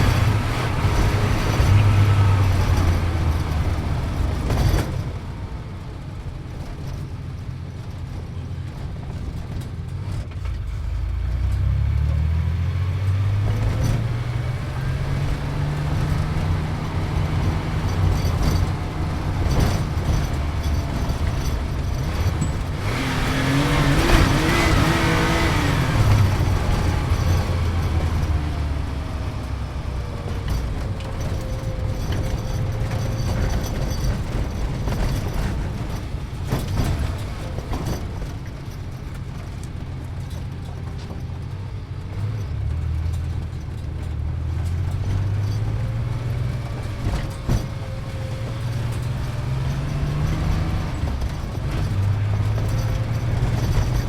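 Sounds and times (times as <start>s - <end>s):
sports car engine revving: 0.0s - 4.8s, 10.7s - 29.7s.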